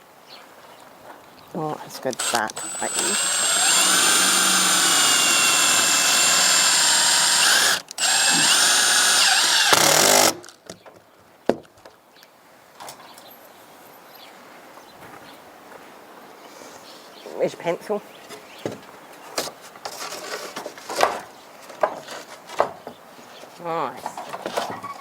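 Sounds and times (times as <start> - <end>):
power drill running under load: 2.2 - 10.4.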